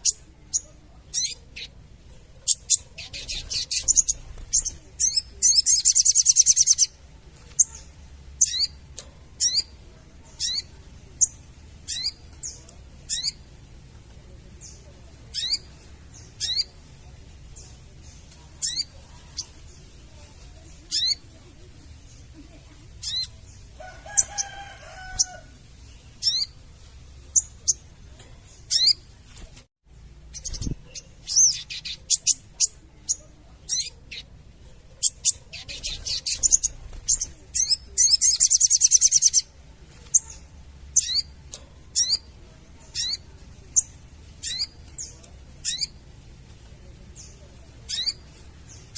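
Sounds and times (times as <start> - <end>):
bird chipping calls: 2.4 - 7.0, 43.8 - 46.0.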